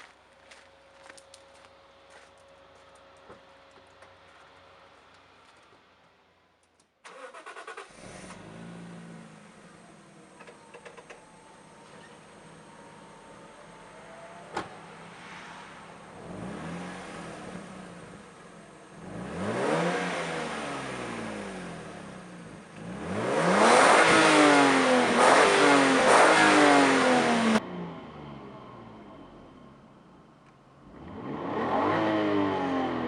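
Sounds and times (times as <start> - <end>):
car engine revving: 7.1 - 30.0, 30.8 - 33.0.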